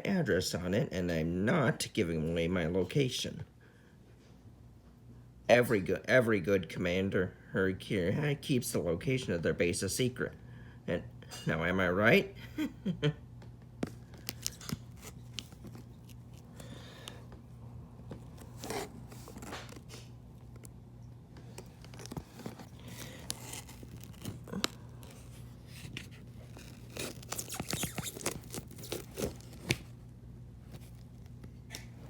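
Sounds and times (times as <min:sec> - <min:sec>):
low steady hum: 0:00.0 - 0:32.0
cardboard box being opened: 0:18.0 - 0:20.8, 0:21.4 - 0:30.0.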